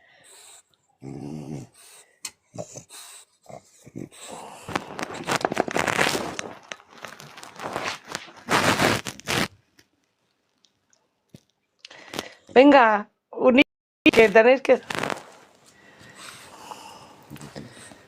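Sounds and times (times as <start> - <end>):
dog snuffling and breathing: 1.6 - 9.5, 14.9 - 18.0.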